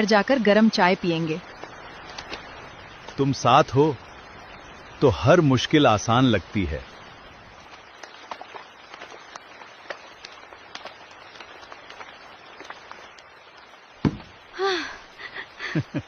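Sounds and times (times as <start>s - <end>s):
steady rain: 0.0s - 16.0s
sharp knock: 14.0s - 14.3s.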